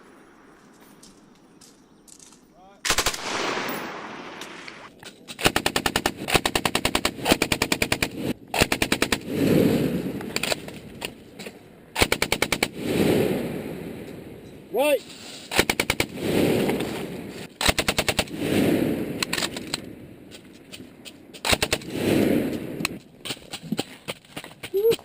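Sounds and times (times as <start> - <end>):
machine gun firing bursts: 2.8 - 10.6, 12.0 - 13.0, 15.5 - 17.0, 17.6 - 18.5, 21.4 - 22.2
rolling gunfire echo: 2.8 - 11.0.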